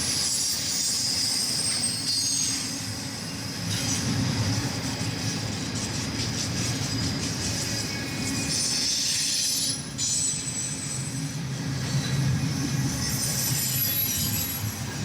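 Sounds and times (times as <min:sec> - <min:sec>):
train wheels rumbling on rails: 0:00.0 - 0:15.0
high wheel squeal: 0:00.1 - 0:02.8, 0:12.8 - 0:15.0.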